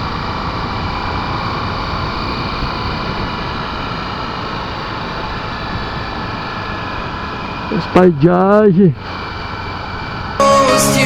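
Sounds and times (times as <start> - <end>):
wind noise: 0.0 - 7.8
motorcycle engine cruising: 0.0 - 10.4
road noise: 0.0 - 11.0.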